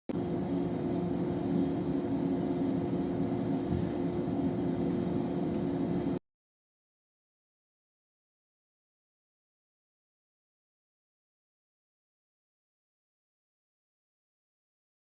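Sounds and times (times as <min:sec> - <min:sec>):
mechanical rumble with low hum: 0:00.1 - 0:06.2.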